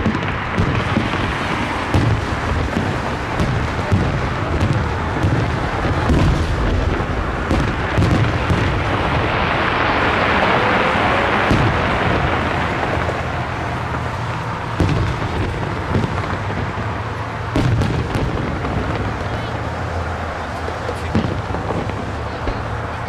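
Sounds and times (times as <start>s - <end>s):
firework booms and bangs: 0.0s - 23.0s
hissing crackle: 0.0s - 23.0s.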